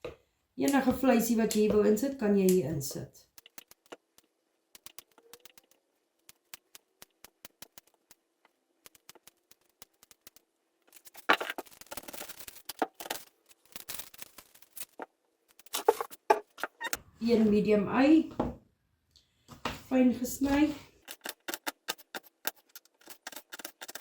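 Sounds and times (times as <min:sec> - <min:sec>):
rustling and scraping on cutting board: 0:08.9 - 0:16.9.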